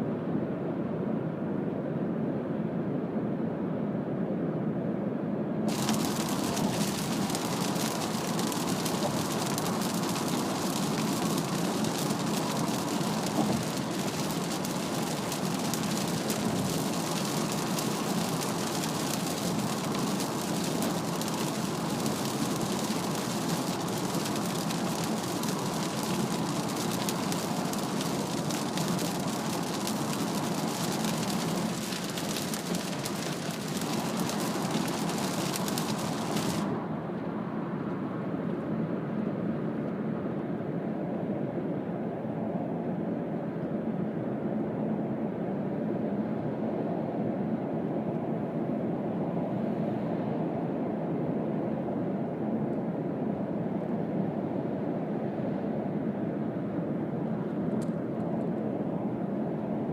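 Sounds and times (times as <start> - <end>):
rain pattering on car body: 5.7 - 36.8
heavy rain and tyre spray: 5.7 - 36.9.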